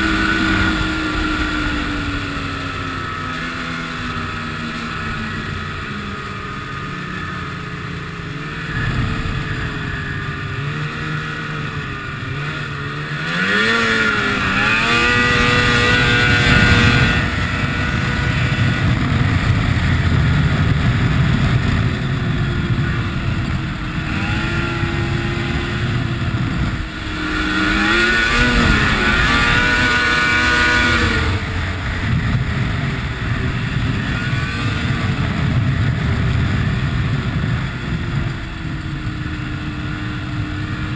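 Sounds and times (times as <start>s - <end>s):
snowmobile engine revving: 0.0s - 40.9s.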